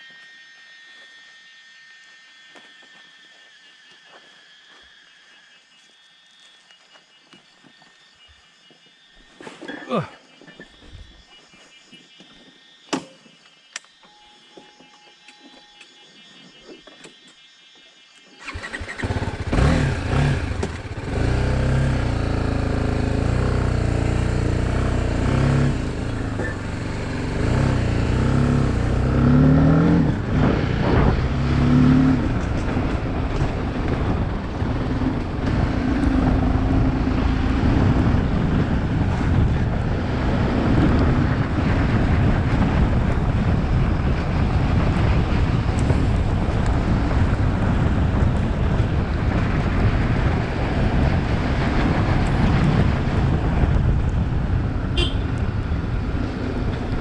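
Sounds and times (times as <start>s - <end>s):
motorcycle engine starting and revving: 18.4s - 57.0s.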